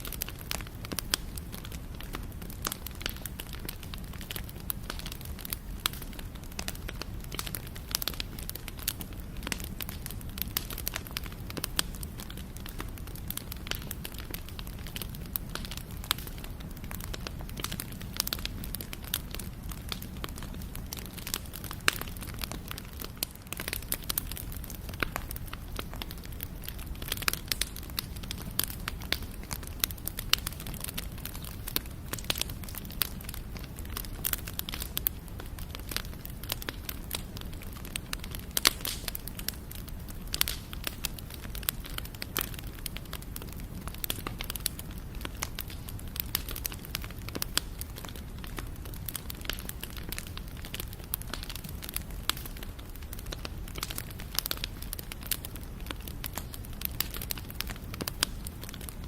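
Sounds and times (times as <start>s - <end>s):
campfire pops and snaps: 0.0s - 59.0s.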